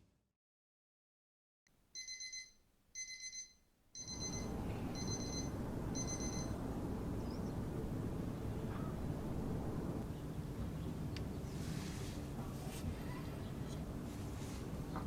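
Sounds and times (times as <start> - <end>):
electronic alarm beeping: 2.0 - 6.6
steady rushing background noise: 4.3 - 11.6.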